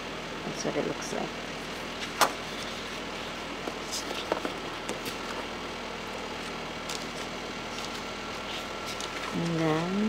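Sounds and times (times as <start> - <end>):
faint hum: 0.0 - 10.0
paper items tapping and rustling: 3.6 - 5.5, 6.4 - 9.7.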